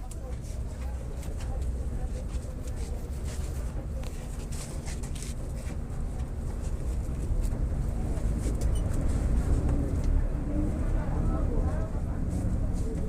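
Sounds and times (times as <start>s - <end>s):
bus diesel engine running: 0.0s - 13.0s.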